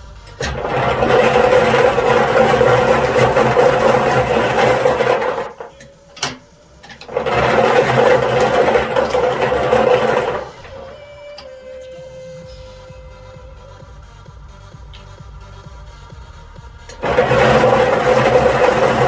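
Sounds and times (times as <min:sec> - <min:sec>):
balls rattling and clattering: 0:00.0 - 0:11.1, 0:16.8 - 0:19.0
lotto machine motor hum: 0:00.0 - 0:19.0.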